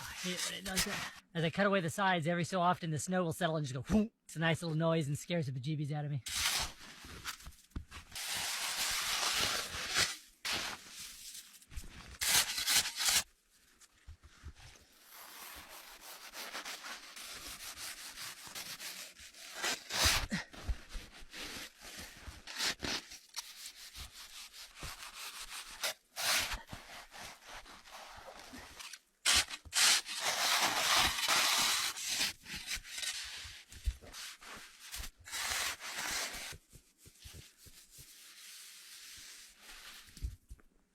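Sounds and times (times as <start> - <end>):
hand tool scraping packed snow: 0.0 - 1.2, 6.3 - 7.5, 8.1 - 11.1, 12.0 - 13.2, 14.8 - 36.6.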